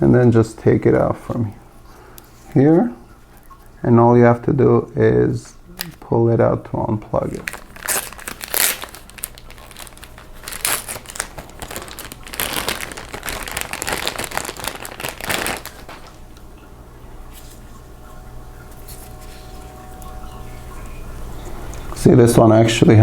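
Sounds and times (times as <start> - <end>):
faint low hum: 0.0 - 23.0
plastic rustling: 7.2 - 22.0.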